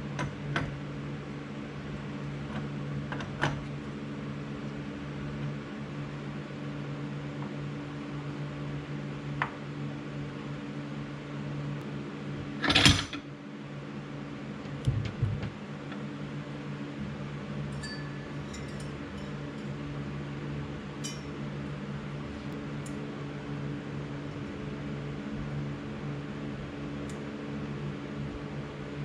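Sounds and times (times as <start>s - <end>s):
fan humming: 0.0s - 29.0s
metallic clinks of parts: 17.7s - 19.8s, 21.0s - 21.4s.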